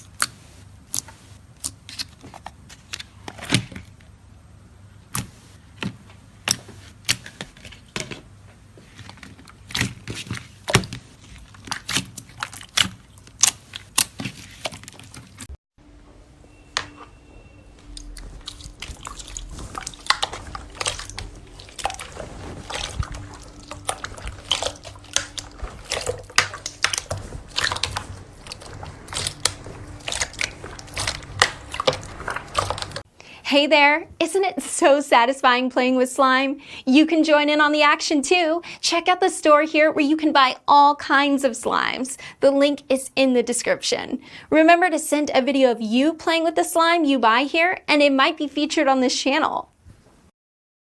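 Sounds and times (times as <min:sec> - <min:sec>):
hands squishing slime: 0:17.8 - 0:33.0.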